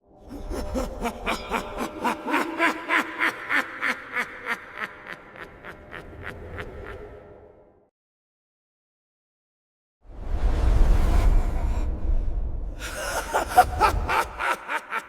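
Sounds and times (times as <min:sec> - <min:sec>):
ghostly voice laughing: 0:00.1 - 0:07.8, 0:12.8 - 0:15.0
low rumble: 0:10.1 - 0:14.4.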